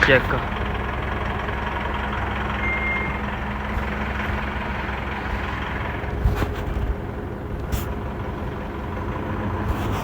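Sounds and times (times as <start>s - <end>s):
diesel engine idling: 0.0s - 10.0s
short high tone: 2.6s - 3.2s.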